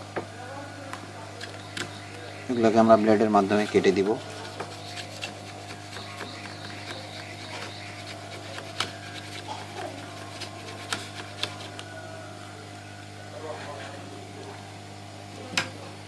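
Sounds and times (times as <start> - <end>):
steady low hum: 0.0 - 16.0
blade scraping solder paste: 3.3 - 11.9.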